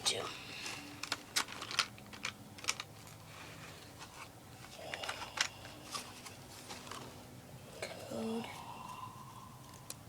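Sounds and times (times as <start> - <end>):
packaging crinkling: 0.6 - 3.3
packaging clicks: 0.9 - 3.2.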